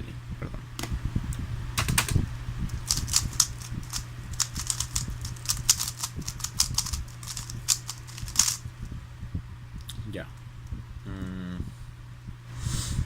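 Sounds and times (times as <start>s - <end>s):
puzzle cube plastic clicks: 1.8s - 8.6s.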